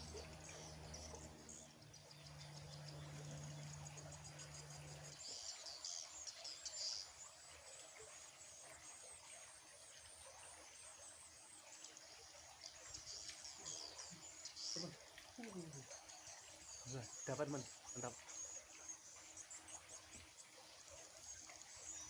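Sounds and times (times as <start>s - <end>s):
low steady hum: 0.0s - 6.1s
birds chirping: 0.0s - 8.7s, 11.2s - 22.0s
insects chirping: 0.0s - 22.0s.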